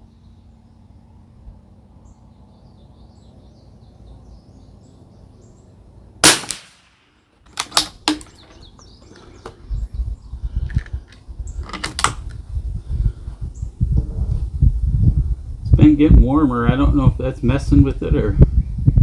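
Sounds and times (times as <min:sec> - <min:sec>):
rifle bolt clicks: 0:06.2 - 0:06.9, 0:07.5 - 0:08.7, 0:10.7 - 0:12.4
rifle shot: 0:06.2 - 0:08.4.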